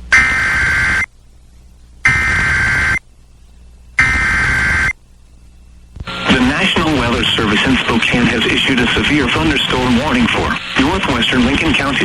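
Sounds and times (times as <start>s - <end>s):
buzzing digital data bursts: 0.1s - 1.1s, 2.0s - 3.0s, 4.0s - 5.0s.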